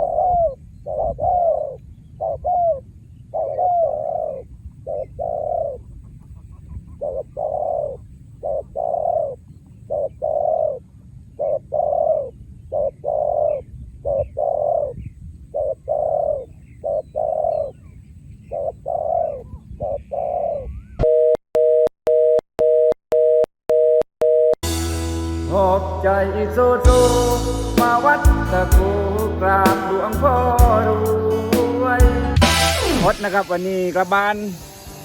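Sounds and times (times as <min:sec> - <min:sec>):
dove cooing: 0:00.0 - 0:05.8, 0:06.5 - 0:17.7, 0:18.5 - 0:20.9.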